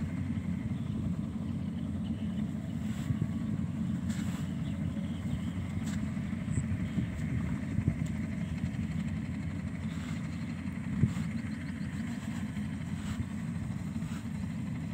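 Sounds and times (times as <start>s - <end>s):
diesel engine low rumble: 0.0s - 14.9s.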